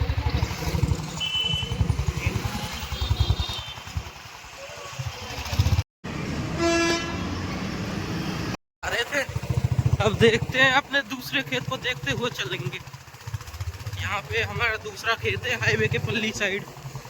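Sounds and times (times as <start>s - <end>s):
motorcycle engine running: 0.0s - 5.8s, 8.8s - 17.0s
vehicle horn toot: 1.2s - 4.0s, 6.5s - 7.4s.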